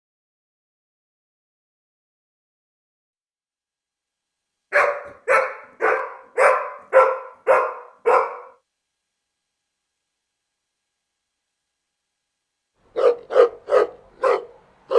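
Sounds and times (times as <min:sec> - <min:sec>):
dog barking: 0:04.7 - 0:08.6, 0:12.9 - 0:14.9.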